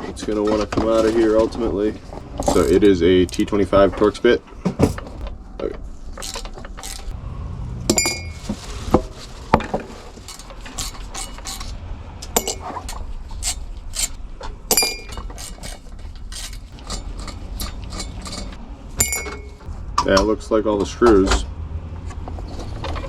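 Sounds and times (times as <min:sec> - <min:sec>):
metal parts ringing: 0:02.3 - 0:05.3, 0:06.0 - 0:07.1, 0:07.9 - 0:19.7
metallic clinks and taps: 0:07.9 - 0:08.4, 0:12.3 - 0:19.7.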